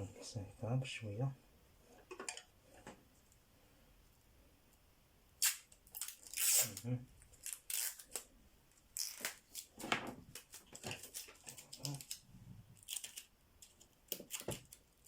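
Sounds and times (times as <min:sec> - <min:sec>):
adhesive tape tearing: 0:05.4 - 0:08.3, 0:08.9 - 0:12.2.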